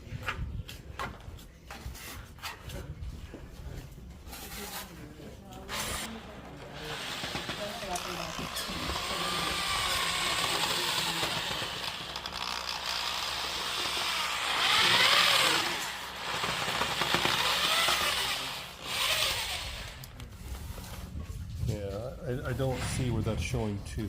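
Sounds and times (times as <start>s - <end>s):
motor running: 5.7s - 20.1s.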